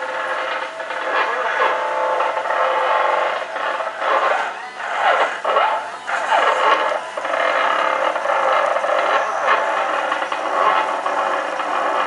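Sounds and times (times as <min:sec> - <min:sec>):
stepper motors whining: 0:00.0 - 0:12.0.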